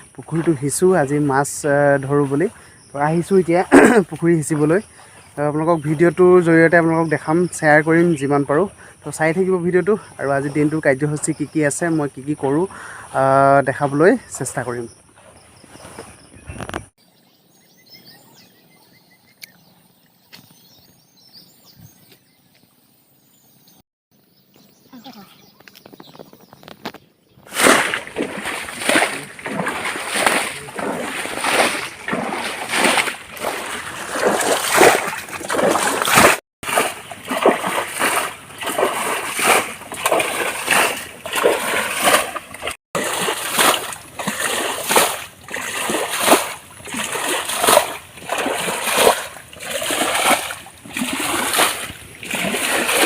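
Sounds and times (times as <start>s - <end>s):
water splashing while bailed: 0.0s - 16.2s, 27.5s - 53.0s.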